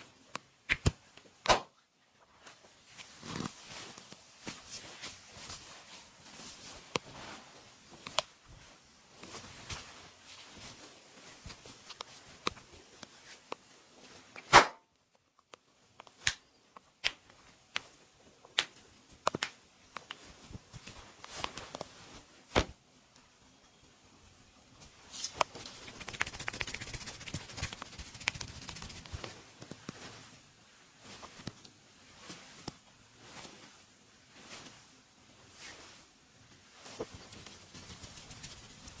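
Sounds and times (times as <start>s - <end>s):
hands rustling over skin: 2.5s - 14.4s, 24.8s - 39.0s.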